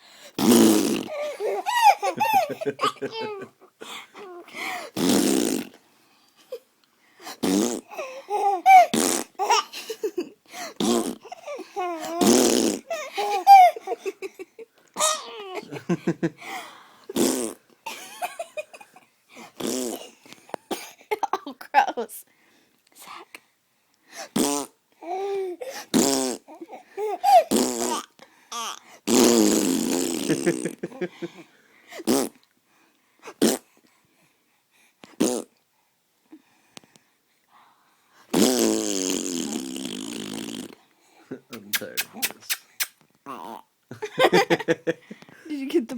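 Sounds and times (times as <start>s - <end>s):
fart noises: 0.4s - 1.2s, 4.9s - 5.8s, 7.4s - 8.0s, 8.9s - 9.6s, 10.8s - 11.3s, 12.0s - 12.9s, 17.1s - 17.7s, 19.6s - 20.2s, 24.3s - 24.8s, 25.8s - 26.6s, 27.3s - 28.1s, 29.1s - 30.9s, 32.0s - 32.4s, 33.3s - 33.7s, 35.1s - 35.6s, 38.3s - 40.8s, 41.5s - 43.0s
baby laughing: 1.1s - 3.6s, 12.9s - 14.3s, 15.0s - 15.9s, 27.0s - 28.0s.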